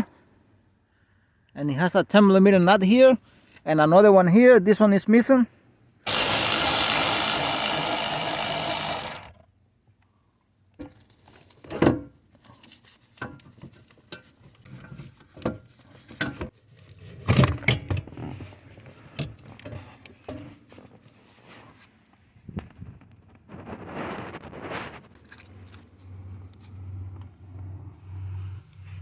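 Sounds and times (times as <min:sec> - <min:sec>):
hand tools clicking and knocking: 0:06.1 - 0:09.3
power tool running: 0:06.1 - 0:09.3.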